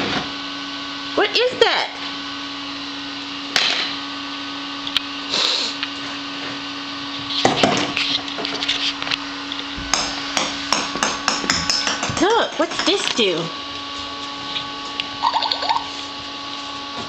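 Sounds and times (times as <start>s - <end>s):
steady hum: 0.0s - 17.0s.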